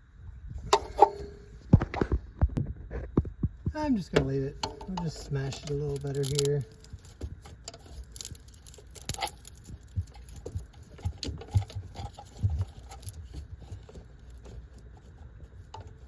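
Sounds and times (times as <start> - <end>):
hand tools clicking on metal: 4.1 - 14.6.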